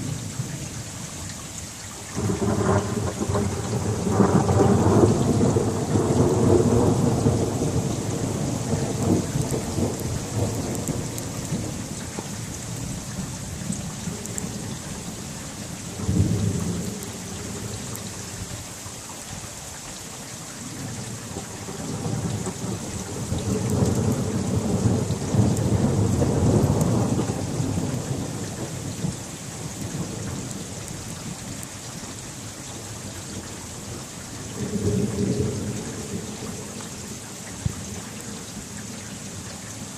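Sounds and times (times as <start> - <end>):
steady rain: 0.0 - 39.9
thunder rolling: 2.2 - 11.8.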